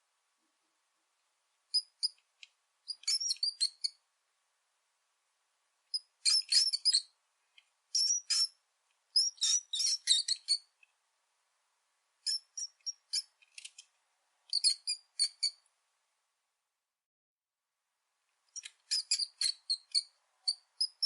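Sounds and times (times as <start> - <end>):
rat squeaking: 1.7 - 2.2, 2.9 - 4.0, 5.9 - 7.2, 7.9 - 8.6, 9.2 - 10.7, 12.2 - 13.8, 14.5 - 15.6, 18.5 - 21.0.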